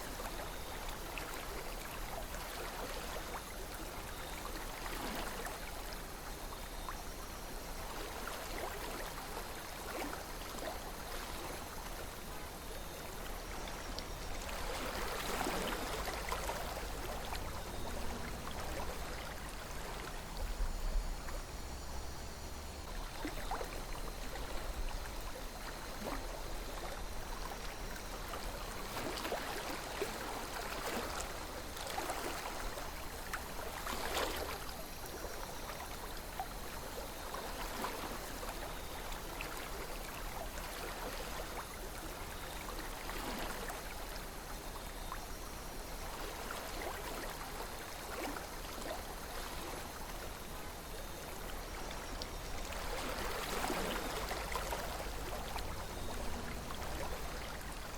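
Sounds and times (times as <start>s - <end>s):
water gurgles and splashes: 0.0s - 57.9s
river water rushing: 52.6s - 57.9s.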